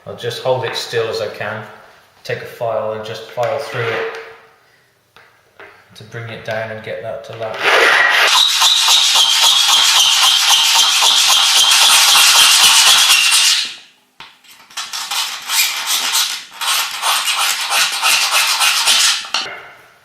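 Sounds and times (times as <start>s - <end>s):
file rasping on metal: 8.3s - 13.7s, 14.8s - 19.5s.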